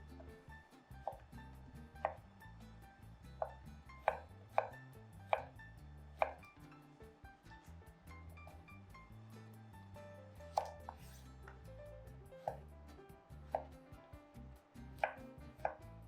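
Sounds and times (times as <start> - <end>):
soft background music: 0.0 - 16.0
knife chopping on cutting board: 1.0 - 1.3, 2.0 - 2.2, 3.4 - 5.6, 6.2 - 6.6, 10.5 - 11.6, 12.4 - 12.6, 13.5 - 13.8, 14.9 - 15.9.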